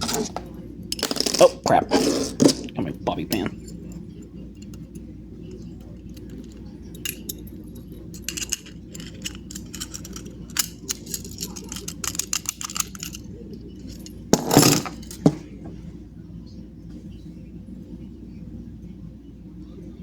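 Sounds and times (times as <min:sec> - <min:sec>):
metal clatter: 0:05.9 - 0:15.5
lock rake clicking and scraping: 0:08.1 - 0:13.2.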